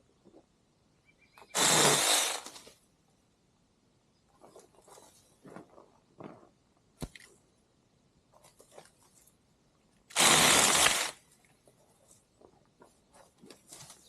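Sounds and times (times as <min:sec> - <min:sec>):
chainsaw cutting branch: 0:01.5 - 0:02.7, 0:10.1 - 0:11.2
brush crackling and rustling: 0:10.1 - 0:14.0.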